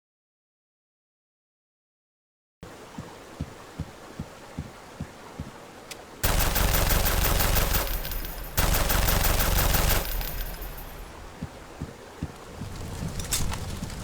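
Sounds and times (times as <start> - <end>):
rapid automatic gunfire: 6.2 - 11.1.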